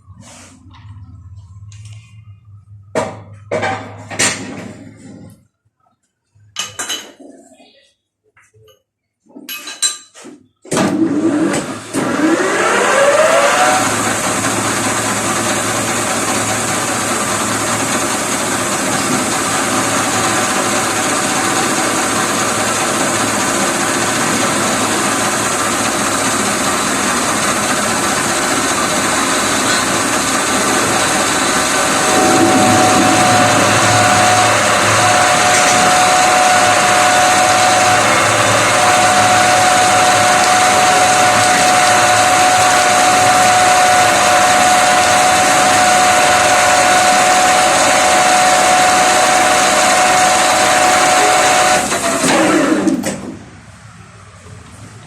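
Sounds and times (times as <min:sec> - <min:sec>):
lathe motor whining and humming: 0:11.0 - 0:53.0.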